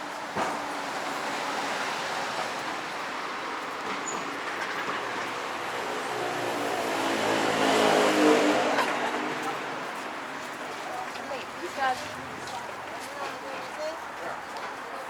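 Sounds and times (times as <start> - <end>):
street noise: 0.0 - 15.0
vehicle passing by: 5.0 - 14.0.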